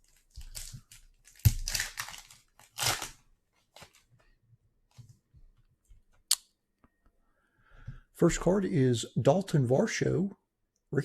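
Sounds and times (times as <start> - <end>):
foil wrapper tearing and crinkling: 0.0 - 4.1.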